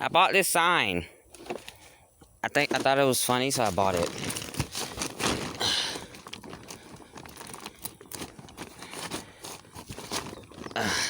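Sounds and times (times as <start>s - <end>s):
crinkling and rustling: 1.3s - 11.0s.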